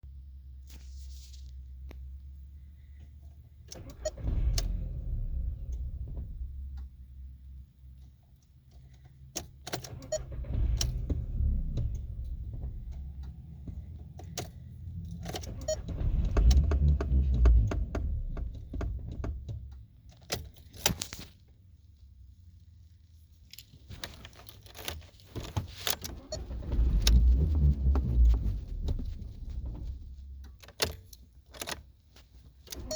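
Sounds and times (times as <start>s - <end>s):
low rumbling: 4.2s - 7.6s, 10.1s - 19.9s, 26.2s - 30.6s
car keys jangling and clicking: 11.8s - 16.0s, 18.4s - 21.2s, 23.4s - 27.0s, 29.6s - 32.9s.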